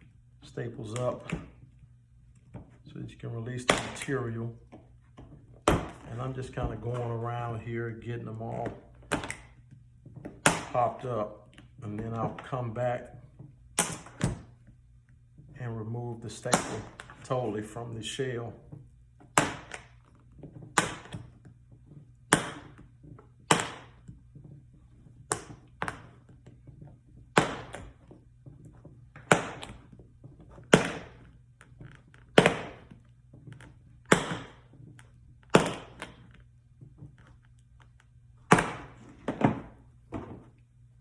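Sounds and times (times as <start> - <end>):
awl prying staples clicks: 9.1 - 9.5.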